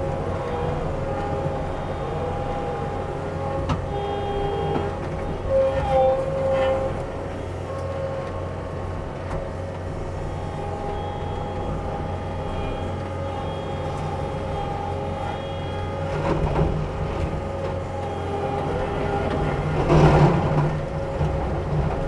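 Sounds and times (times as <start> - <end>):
excavator diesel engine drone: 0.0 - 22.0
whining hydraulics: 0.0 - 22.0.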